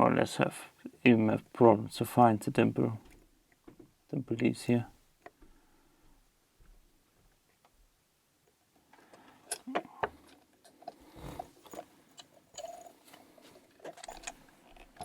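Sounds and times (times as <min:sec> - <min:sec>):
lock pick clicking and scraping: 0:13.8 - 0:15.0.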